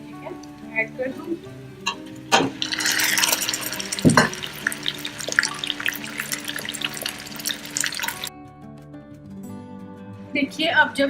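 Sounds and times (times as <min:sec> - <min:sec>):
chicken sizzling in hot oil: 0:01.9 - 0:08.3.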